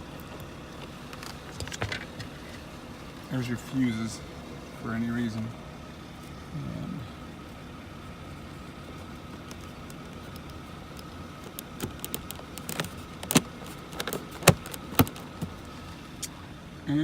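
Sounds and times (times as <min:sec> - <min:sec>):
faint steady hum: 0:00.0 - 0:17.0
plastic trim panel clicking: 0:09.4 - 0:15.7.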